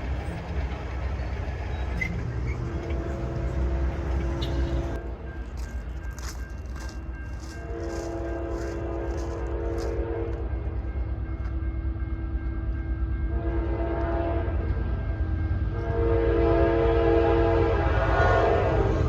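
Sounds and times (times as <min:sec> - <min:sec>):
deep rumble of train: 0:00.0 - 0:19.0
locomotive air horn blasts: 0:02.6 - 0:05.2, 0:07.5 - 0:10.5, 0:13.3 - 0:14.6, 0:15.7 - 0:19.0.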